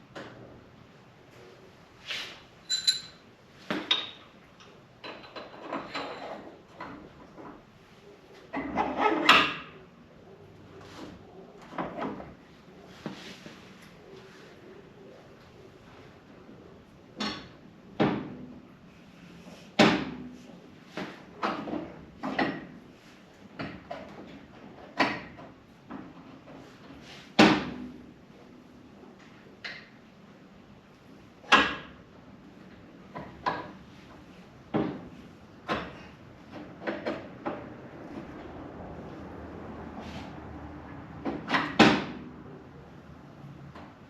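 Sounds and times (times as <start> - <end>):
metal parts rattling and scraping: 2.6 - 3.2
ringing metal clinks: 2.7 - 3.2.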